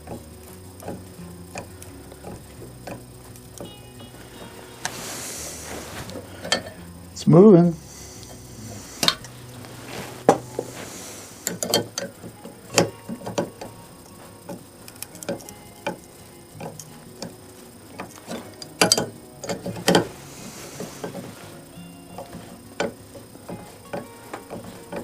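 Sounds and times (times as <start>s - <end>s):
metallic clicks of hand tools: 11.4s - 12.1s.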